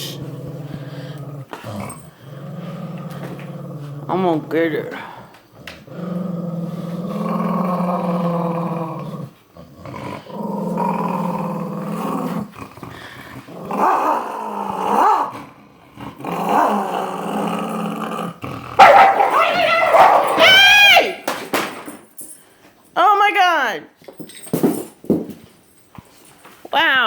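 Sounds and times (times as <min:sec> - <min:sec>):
dog growling: 0:00.0 - 0:20.4.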